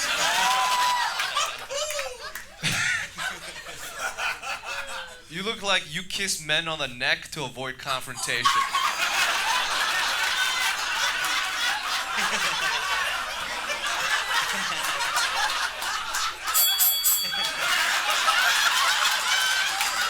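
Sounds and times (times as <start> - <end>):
audience laughing: 0.0 - 5.3, 8.1 - 20.0
shrill high-pitched sound: 16.5 - 17.5.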